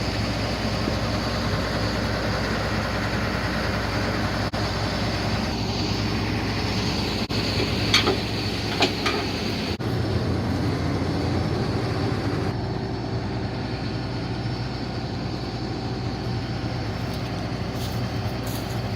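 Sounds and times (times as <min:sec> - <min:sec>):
diesel engine humming: 0:00.0 - 0:18.9
sharp metallic clanks: 0:07.5 - 0:09.4.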